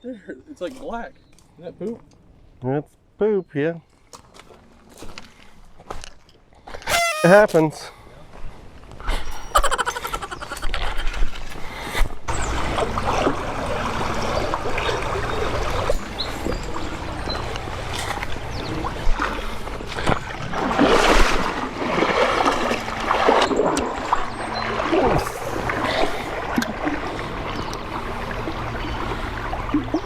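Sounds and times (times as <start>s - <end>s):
creek water running: 6.8s - 7.8s, 9.7s - 30.0s
water splashing: 12.3s - 30.0s.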